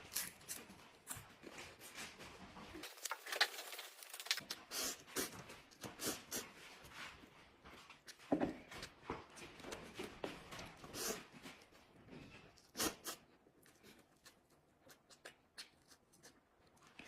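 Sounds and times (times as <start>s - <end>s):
person chewing wetly: 12.6s - 17.0s.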